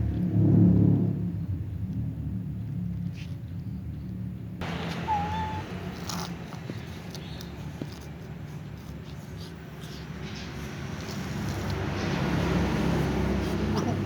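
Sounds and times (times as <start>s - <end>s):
steady low rumble: 0.0s - 10.1s
cat meowing: 4.6s - 6.3s.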